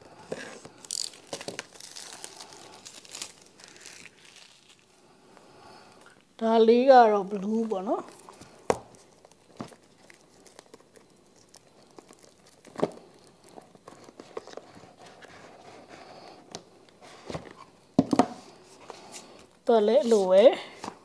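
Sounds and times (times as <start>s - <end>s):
plastic and paper crinkling: 0.3s - 4.9s, 7.4s - 16.4s.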